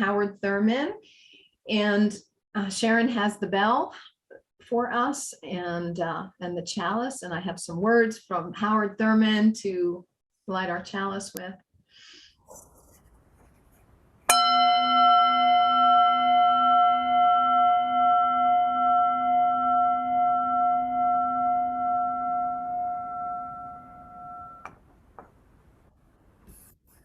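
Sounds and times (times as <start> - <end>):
bell ringing: 14.3 - 24.7.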